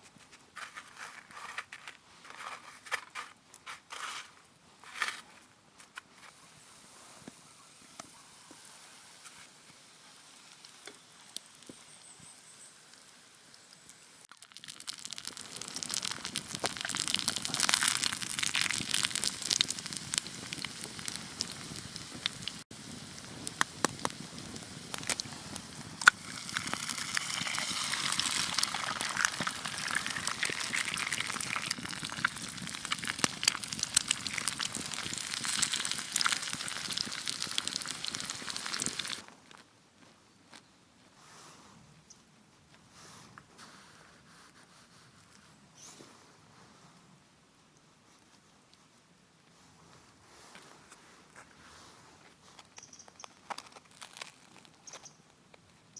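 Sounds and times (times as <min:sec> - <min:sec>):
food sizzling in hot oil: 0:10.3 - 0:39.2
oil spitting crackles: 0:12.9 - 0:39.2.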